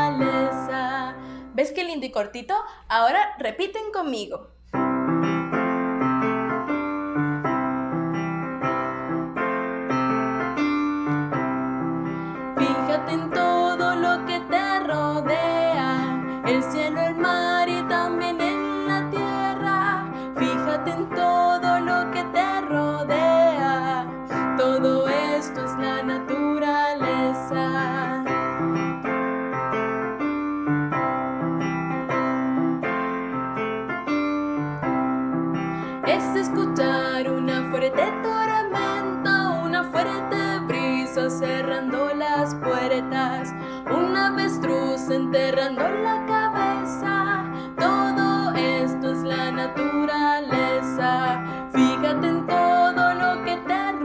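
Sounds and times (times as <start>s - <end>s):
person singing: 0.0s - 1.2s, 12.6s - 28.5s, 35.9s - 54.0s
piano playing: 0.0s - 2.0s, 4.7s - 54.0s.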